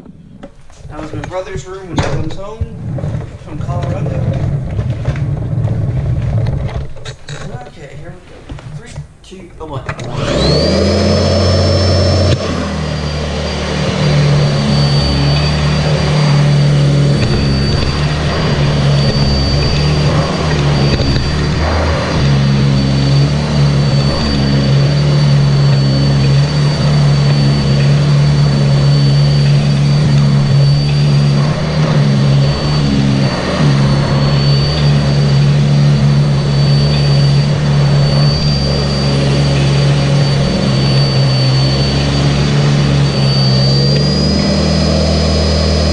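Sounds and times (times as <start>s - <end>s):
vacuum cleaner running: 9.9s - 45.9s.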